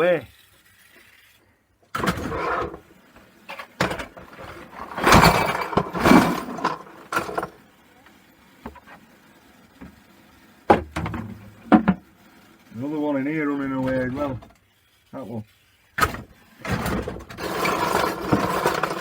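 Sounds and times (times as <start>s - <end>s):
metal clock parts clattering: 4.2s - 7.6s.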